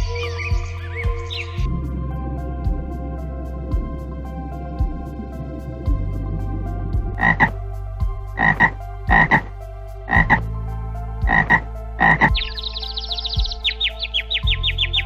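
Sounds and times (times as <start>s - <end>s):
high falling bird chirps: 12.4s - 15.0s.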